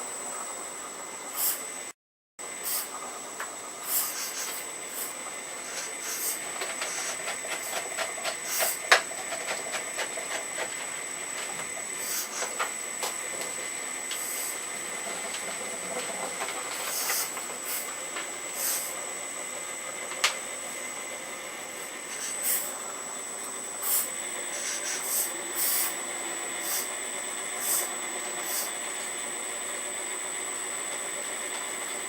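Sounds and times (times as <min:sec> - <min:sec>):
hydraulic whine: 0:00.0 - 0:32.0
hydraulic hisses: 0:01.3 - 0:01.7, 0:02.6 - 0:03.0, 0:03.8 - 0:07.1, 0:08.4 - 0:08.8, 0:12.0 - 0:12.6, 0:14.1 - 0:14.7, 0:16.8 - 0:19.0, 0:21.7 - 0:22.8, 0:23.8 - 0:26.0, 0:26.6 - 0:27.0, 0:27.6 - 0:28.8.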